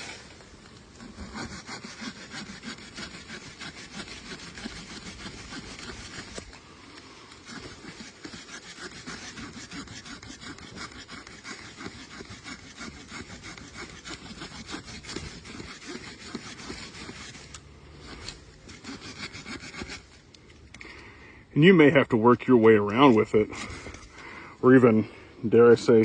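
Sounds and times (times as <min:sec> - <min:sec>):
hand saw sawing wood: 0:00.0 - 0:20.3.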